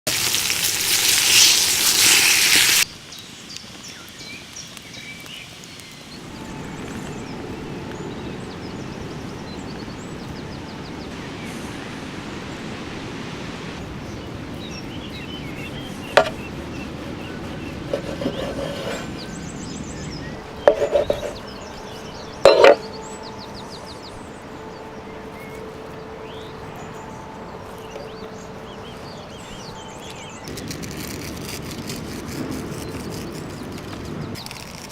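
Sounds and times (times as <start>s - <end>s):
birds chirping: 0.5s - 12.8s, 13.7s - 30.9s.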